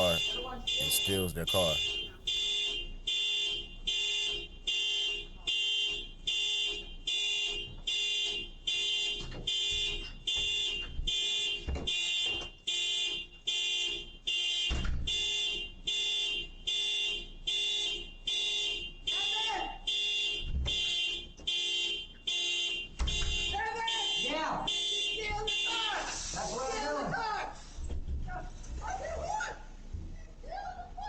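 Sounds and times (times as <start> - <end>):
car alarm beeping: 0.0 - 2.4.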